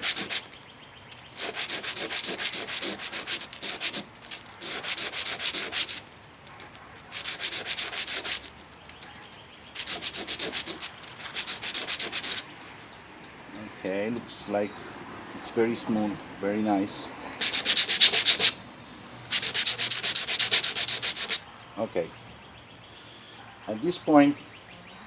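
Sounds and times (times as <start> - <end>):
metal tube rasping on sandpaper: 0.0 - 0.4, 1.4 - 6.0, 7.2 - 8.5, 9.8 - 12.4, 17.4 - 18.6, 19.3 - 21.4.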